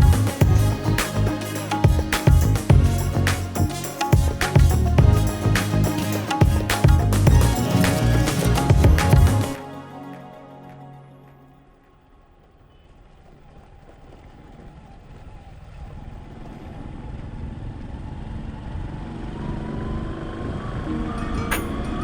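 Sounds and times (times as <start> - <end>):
road vehicle engine and tyres: 11.8 - 22.0.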